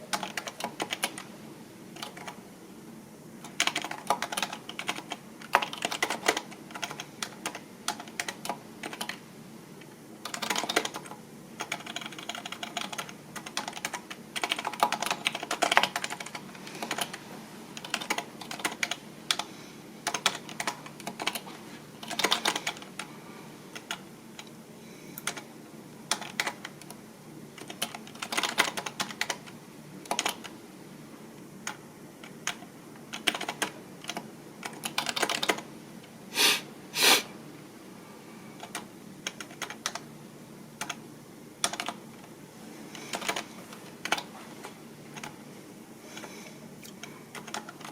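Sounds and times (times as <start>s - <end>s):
typing on computer keyboard: 0.0s - 1.3s, 2.0s - 2.4s, 3.4s - 9.2s, 10.2s - 17.2s, 17.8s - 23.1s, 23.7s - 24.5s, 25.2s - 25.5s, 26.1s - 27.0s, 27.6s - 30.5s, 31.6s - 35.7s, 38.6s - 40.1s, 40.8s - 41.0s, 41.6s - 42.0s, 43.0s - 44.3s, 45.2s - 45.4s, 46.9s - 47.9s.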